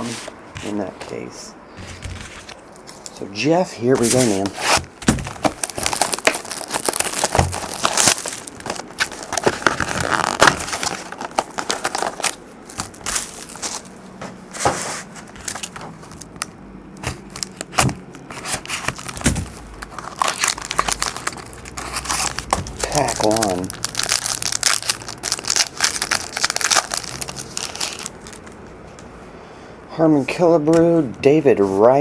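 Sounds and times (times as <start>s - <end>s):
cardboard rustling: 0.0s - 29.0s
foil wrapper crinkling: 2.3s - 3.2s, 3.9s - 14.0s, 14.7s - 28.6s.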